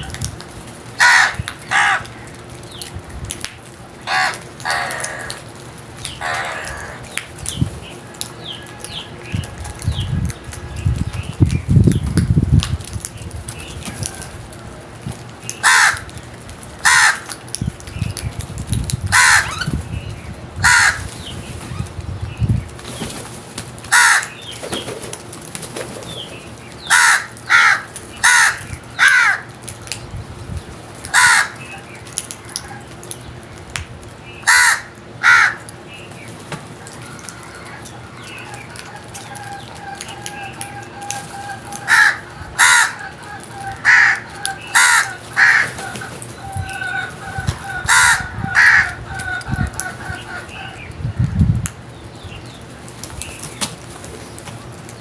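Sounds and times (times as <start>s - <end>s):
crows cawing: 1.0s - 2.4s, 4.0s - 7.2s, 15.6s - 16.1s, 16.8s - 17.4s, 19.1s - 19.7s, 20.6s - 21.1s, 23.9s - 24.5s, 26.8s - 29.6s, 31.0s - 33.0s, 34.4s - 35.7s, 36.8s - 50.9s.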